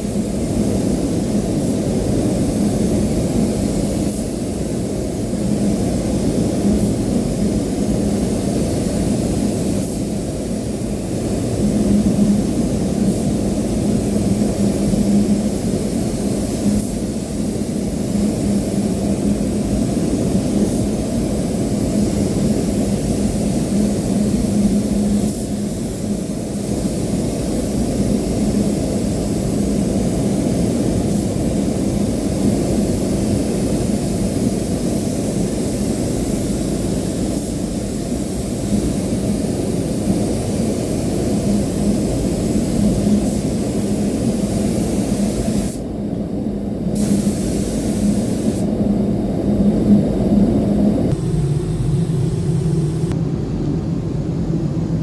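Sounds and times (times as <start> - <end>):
spray gun hissing: 0.0 - 53.2
low machine hum: 48.6 - 55.0.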